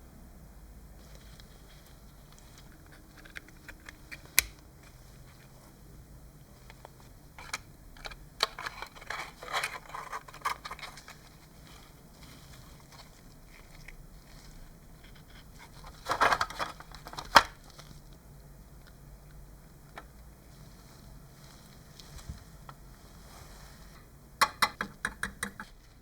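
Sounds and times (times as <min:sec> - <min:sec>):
small plastic parts clicking: 0:02.6 - 0:04.6, 0:06.7 - 0:11.3, 0:15.1 - 0:17.6.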